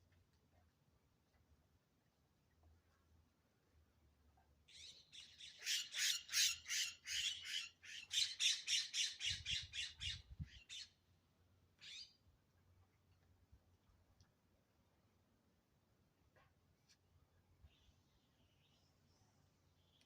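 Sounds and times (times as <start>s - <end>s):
wind rumble on microphone: 9.3s - 10.6s.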